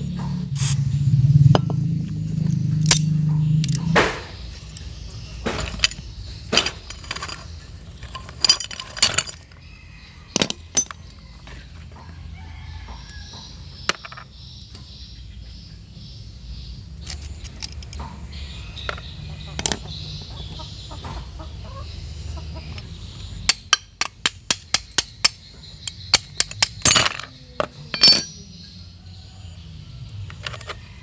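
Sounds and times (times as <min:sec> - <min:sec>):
low machine hum: 0:00.0 - 0:10.0
metal clinks and taps: 0:04.6 - 0:09.6, 0:23.5 - 0:28.6.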